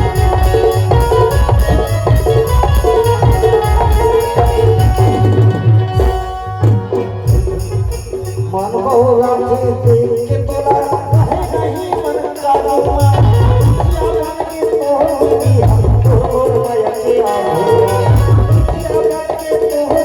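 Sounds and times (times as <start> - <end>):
sustained melodic instrument: 0.0 - 9.5
hand drum strokes: 0.0 - 20.0.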